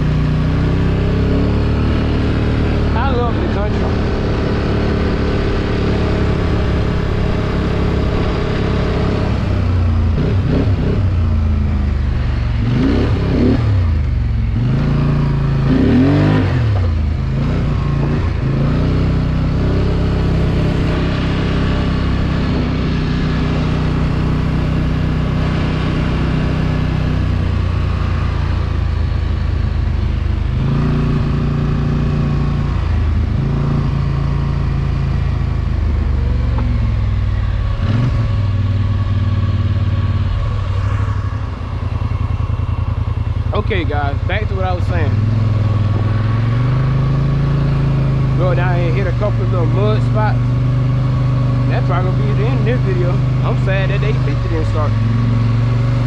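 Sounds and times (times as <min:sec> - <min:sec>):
atv engine revving: 0:00.0 - 0:56.0.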